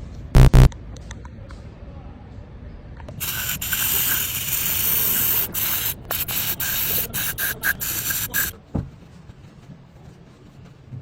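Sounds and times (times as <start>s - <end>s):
loud harsh hiss: 3.2s - 8.5s.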